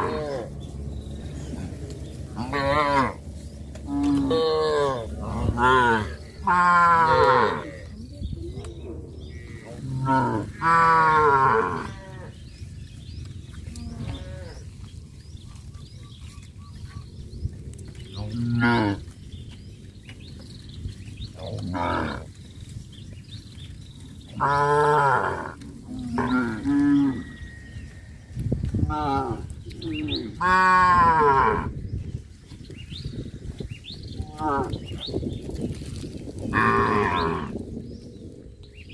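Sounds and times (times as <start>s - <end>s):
cattle mooing: 0.0s - 3.2s, 3.8s - 7.9s, 8.8s - 12.4s, 13.7s - 14.6s, 18.2s - 19.0s, 21.4s - 22.3s, 24.4s - 27.9s, 28.8s - 31.7s, 36.5s - 37.6s.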